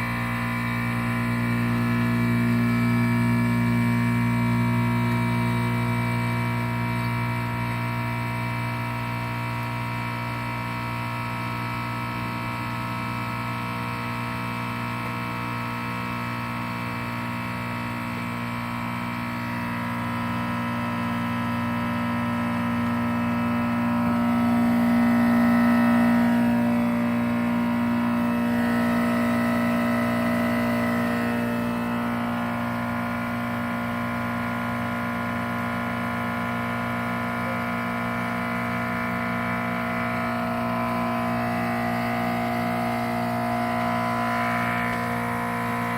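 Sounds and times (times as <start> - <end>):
compressor unit humming: 0.0 - 45.9
wavering high whine: 17.6 - 45.9.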